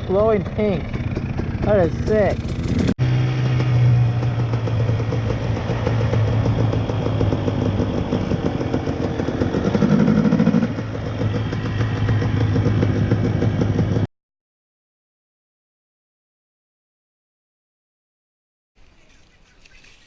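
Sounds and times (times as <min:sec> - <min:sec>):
dirt bike engine running: 0:00.0 - 0:14.1.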